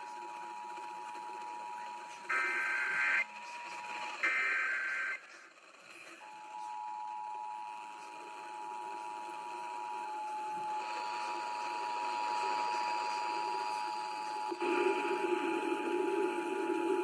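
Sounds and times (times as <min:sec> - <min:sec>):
warbling data burst: 0:02.3 - 0:05.3.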